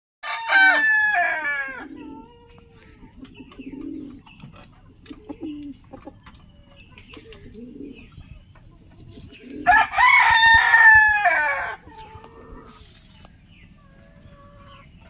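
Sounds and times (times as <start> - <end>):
rooster crowing: 0.2 - 1.9, 9.6 - 11.8.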